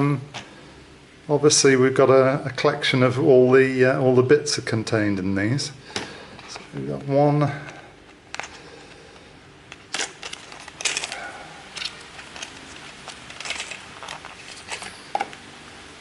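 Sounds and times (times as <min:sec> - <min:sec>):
packaging being handled: 0:09.7 - 0:15.6.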